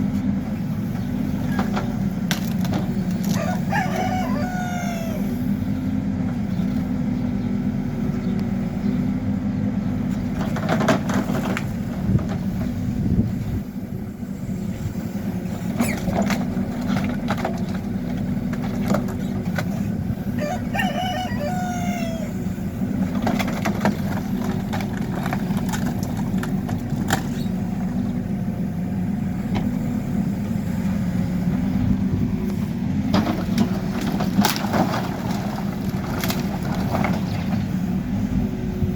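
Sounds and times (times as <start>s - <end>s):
diesel engine running: 0.0s - 38.9s
rooster crowing: 3.2s - 5.4s, 20.3s - 22.6s.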